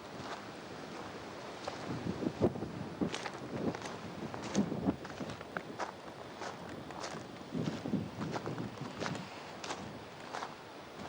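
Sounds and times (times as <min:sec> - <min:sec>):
footsteps on loose stones: 0:03.1 - 0:10.6.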